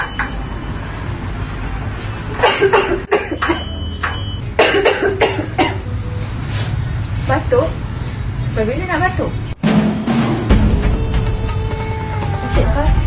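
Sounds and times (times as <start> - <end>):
person coughing harshly: 2.4 - 3.6, 4.6 - 5.8
background music: 9.7 - 13.0.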